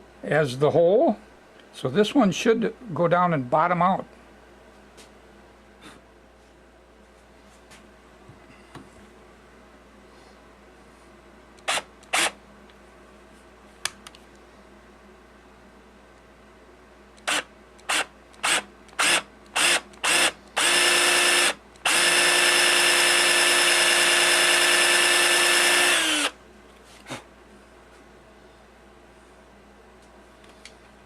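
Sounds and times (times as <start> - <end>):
power drill boring: 11.7 - 12.3, 17.2 - 26.4.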